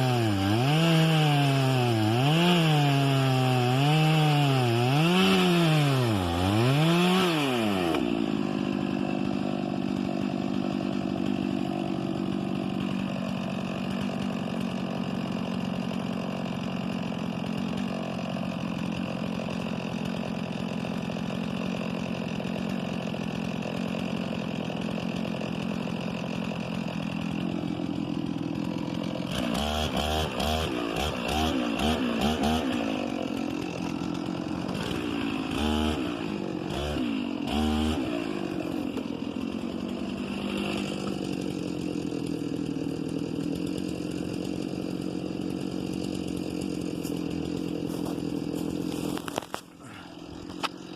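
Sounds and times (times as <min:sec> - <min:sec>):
chainsaw revving and idling: 0:00.0 - 0:50.9.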